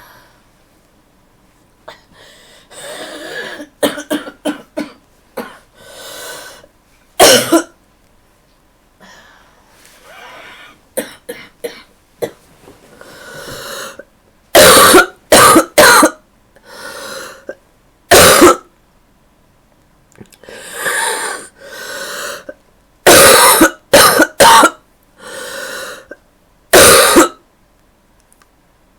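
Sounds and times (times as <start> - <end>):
breathing: 0.0 - 0.5, 2.1 - 3.2, 5.7 - 6.7, 9.0 - 10.8, 12.9 - 14.0, 16.6 - 17.5, 20.4 - 22.5, 25.2 - 26.2
girl's wet cough: 2.8 - 5.6, 7.2 - 7.7, 14.6 - 16.2, 18.1 - 18.6, 23.1 - 24.8, 26.7 - 27.4.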